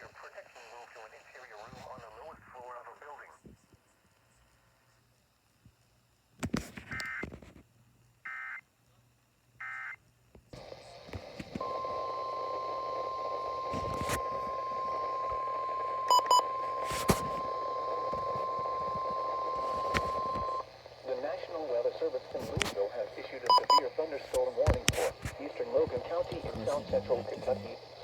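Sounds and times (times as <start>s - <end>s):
radio static: 0.0s - 3.5s, 10.6s - 28.0s
steady warning alarm tone: 11.6s - 20.8s
short beeps: 13.7s - 16.8s, 23.5s - 23.8s.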